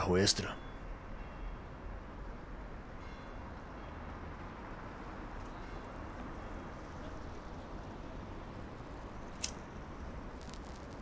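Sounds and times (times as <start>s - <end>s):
low traffic rumble and hiss: 0.0s - 0.7s.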